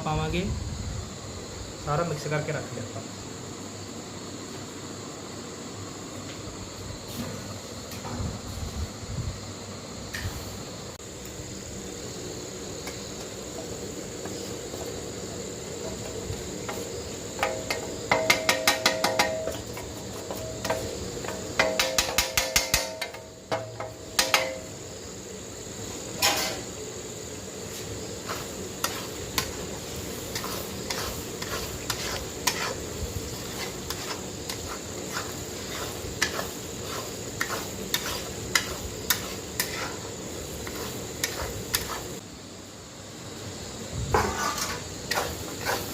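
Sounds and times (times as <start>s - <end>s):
spoon clanking against pan: 17.4s - 24.7s, 26.2s - 26.7s
metal spoon scraping a pan: 26.2s - 26.7s, 28.2s - 42.2s, 44.2s - 45.9s
chicken frying in a pan: 27.3s - 42.2s.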